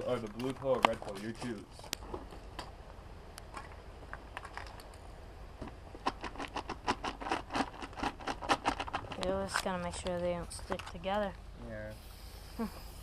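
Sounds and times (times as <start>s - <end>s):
small hard objects clicking: 3.4s - 5.0s, 6.0s - 11.0s.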